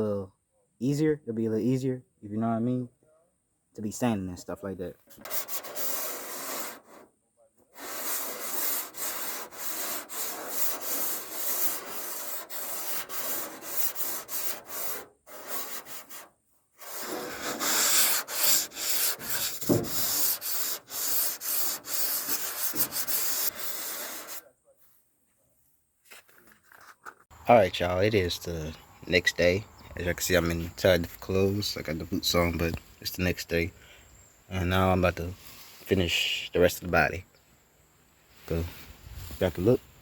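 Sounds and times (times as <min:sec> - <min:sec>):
sandpaper rubbing on steel panel: 0:05.2 - 0:07.1, 0:07.7 - 0:24.4.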